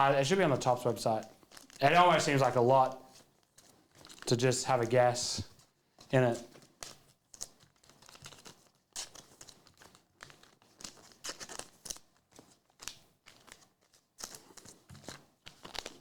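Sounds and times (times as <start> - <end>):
plastic wrapping crinkling: 0.1 - 4.9.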